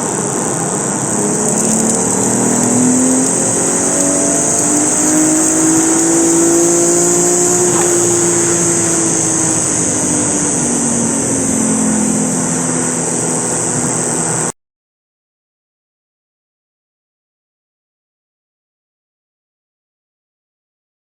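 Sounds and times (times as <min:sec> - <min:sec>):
engine tone through knock sensor: 0:00.0 - 0:14.5.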